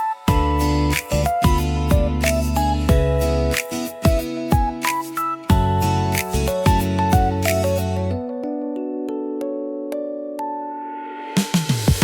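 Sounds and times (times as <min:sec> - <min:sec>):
background music with bass line: 0:00.0 - 0:08.2, 0:11.2 - 0:12.0.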